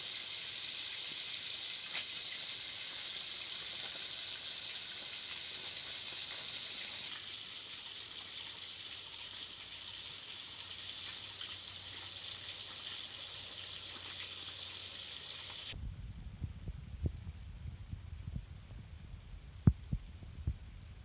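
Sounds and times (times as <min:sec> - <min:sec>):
high-pitched hiss: 0:00.0 - 0:15.8
low rumble: 0:15.8 - 0:21.0.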